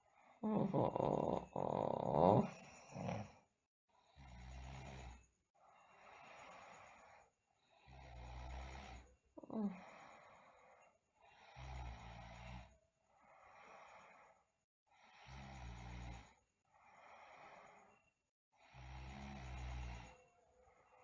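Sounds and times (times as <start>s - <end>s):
soft breathy breaths: 0.0s - 3.5s, 5.6s - 21.0s
person snoring: 0.4s - 3.4s, 8.5s - 10.1s.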